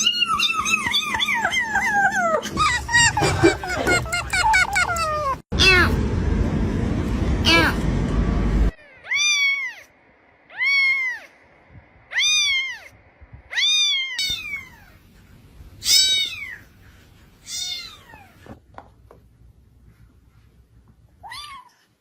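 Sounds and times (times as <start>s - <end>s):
cat meowing: 5.0s - 6.0s, 8.8s - 9.9s, 10.5s - 11.3s, 12.1s - 15.0s, 15.8s - 16.6s, 17.4s - 18.4s.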